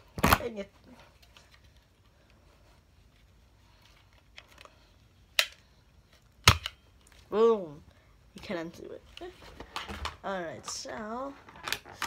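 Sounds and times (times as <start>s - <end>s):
plastic toy parts being handled: 3.0s - 7.2s.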